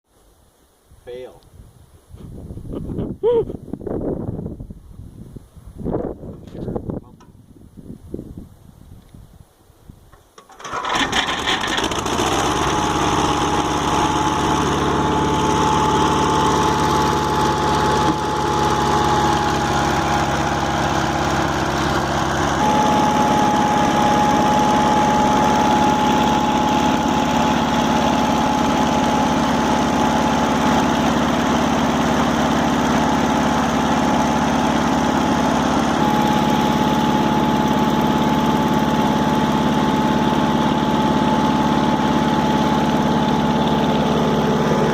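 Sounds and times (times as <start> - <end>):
small gasoline engine running: 10.4 - 44.9.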